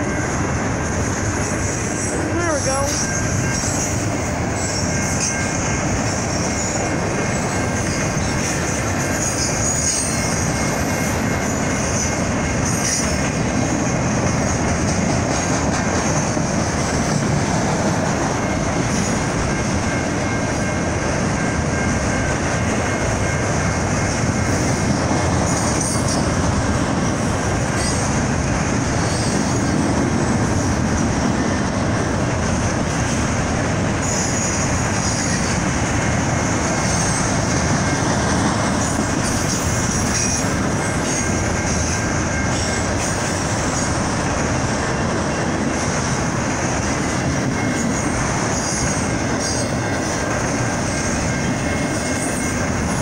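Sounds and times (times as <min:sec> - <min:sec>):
train wheels rumbling and clattering: 0:00.0 - 0:53.0
wheels squealing: 0:29.0 - 0:29.9.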